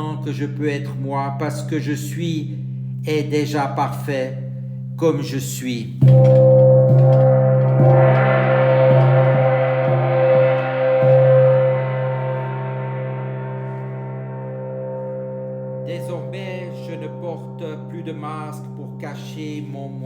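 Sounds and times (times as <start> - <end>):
steady low tones: 0.0 - 20.0
gong ringing: 6.0 - 20.0.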